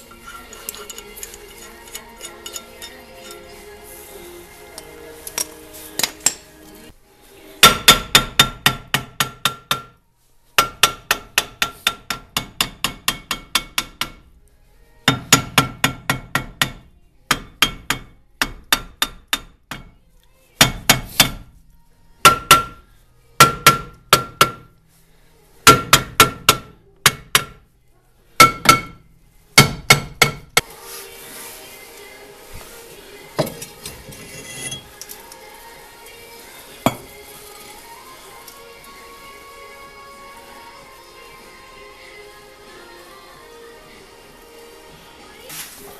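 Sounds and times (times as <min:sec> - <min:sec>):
hammer striking metal: 0:07.6 - 0:10.0, 0:10.6 - 0:14.2, 0:22.2 - 0:22.8, 0:23.4 - 0:24.7, 0:25.6 - 0:27.6, 0:28.4 - 0:29.0, 0:29.6 - 0:30.7.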